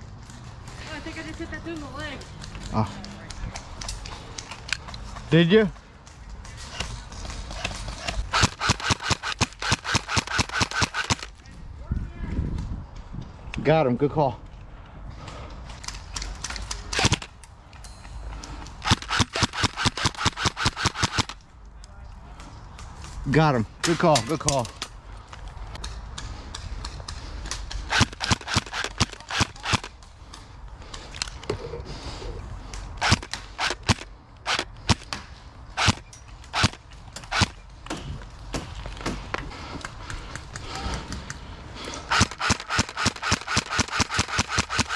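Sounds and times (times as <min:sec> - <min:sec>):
airsoft guns firing: 0:08.1 - 0:11.3, 0:16.6 - 0:17.3, 0:18.8 - 0:21.4, 0:27.8 - 0:29.9, 0:42.1 - 0:44.9.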